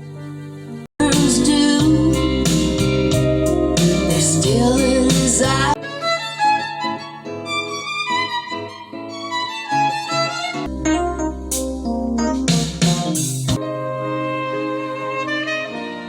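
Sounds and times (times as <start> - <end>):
music over loudspeakers: 1.0 - 5.8, 10.7 - 13.9.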